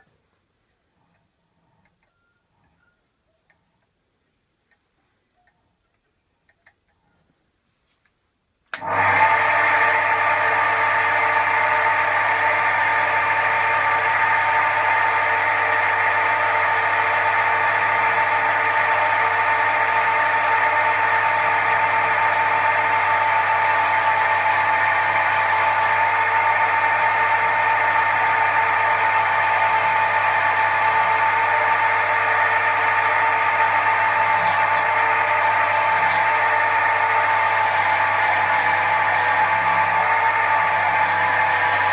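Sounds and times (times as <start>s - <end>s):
wood lathe humming and whining: 8.8s - 41.9s.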